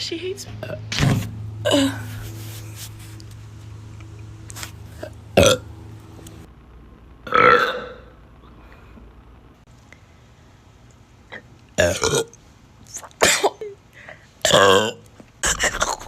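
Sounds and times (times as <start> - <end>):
woman burping: 0.6 - 0.9, 1.6 - 2.2, 5.0 - 5.6, 7.2 - 8.1.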